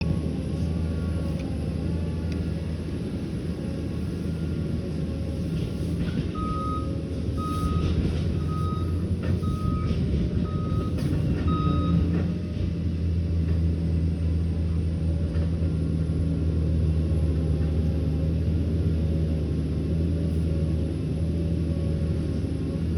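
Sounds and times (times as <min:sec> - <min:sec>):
crawler dozer engine running: 0:00.0 - 0:22.9
reversing alarm beeping: 0:06.4 - 0:12.1.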